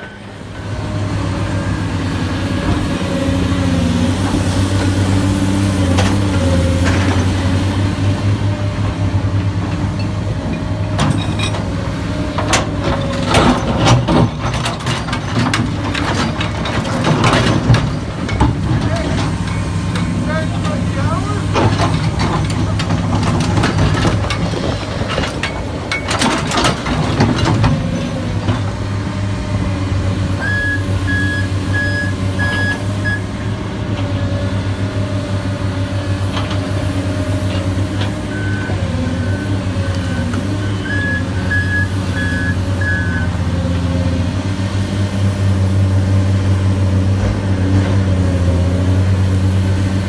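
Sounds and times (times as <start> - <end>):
heavy diesel engine running: 0.0 - 50.0
sharp knocks and clatter: 9.6 - 28.8
truck reversing alarm beeping: 29.4 - 33.6, 37.0 - 44.1.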